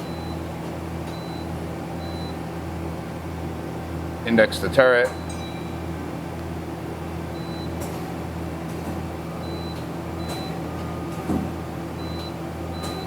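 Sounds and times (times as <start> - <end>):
machine running hum: 0.0 - 13.0
lathe turret clunk: 7.7 - 13.0.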